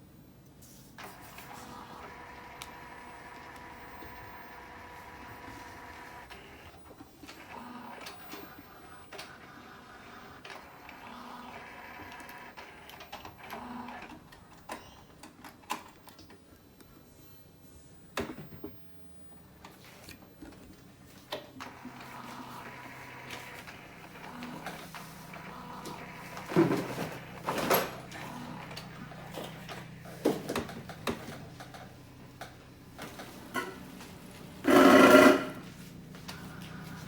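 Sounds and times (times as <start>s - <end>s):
printer motor whirring: 1.0s - 16.1s, 19.6s - 37.0s
printer carriage clunks: 25.8s - 28.3s, 29.3s - 31.8s, 34.6s - 35.6s.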